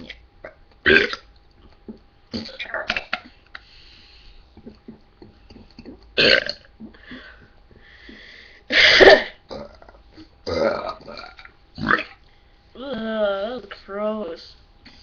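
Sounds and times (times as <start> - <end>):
person burping loudly: 0.0 - 1.2, 5.9 - 7.3, 8.7 - 12.2.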